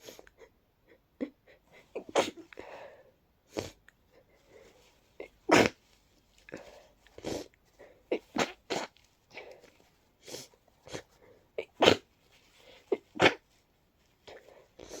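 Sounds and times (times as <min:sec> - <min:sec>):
person sneezing: 0:01.8 - 0:02.6, 0:05.2 - 0:05.8, 0:08.1 - 0:09.6, 0:10.2 - 0:12.1, 0:12.9 - 0:13.4.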